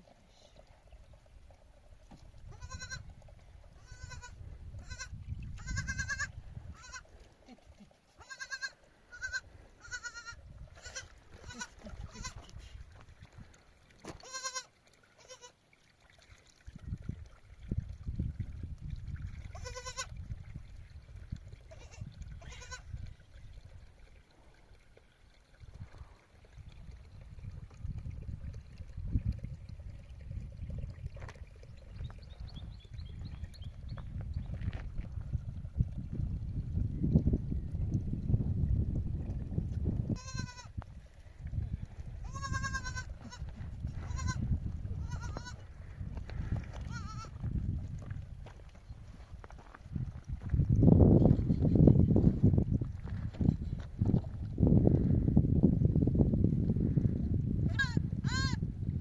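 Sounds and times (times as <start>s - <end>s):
sheep and goats bleating: 2.5s - 3.1s, 3.8s - 12.5s, 14.2s - 15.6s, 19.5s - 20.1s, 21.7s - 22.9s, 40.1s - 40.7s, 42.2s - 45.7s, 46.8s - 47.4s, 57.7s - 58.6s.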